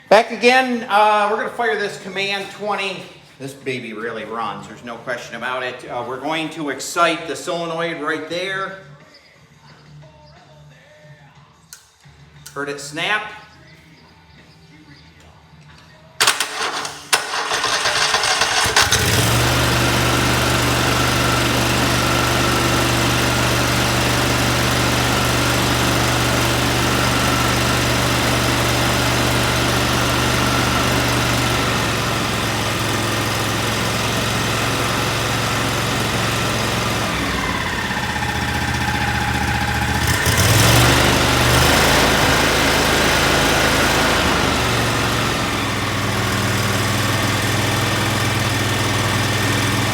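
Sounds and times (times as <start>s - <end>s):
engine starter cranking: 16.2s - 22.8s
engine running: 16.2s - 49.9s.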